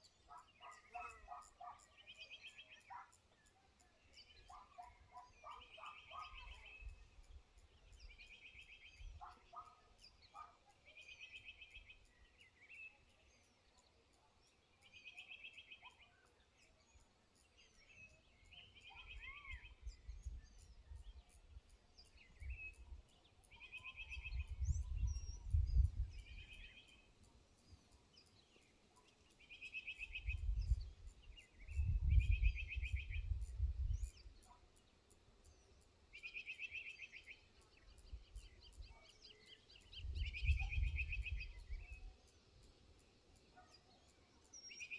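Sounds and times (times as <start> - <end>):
faint bird chirps: 0.0 - 44.9
low rumbling wind gusts: 24.2 - 26.4, 30.2 - 34.1, 40.0 - 42.0.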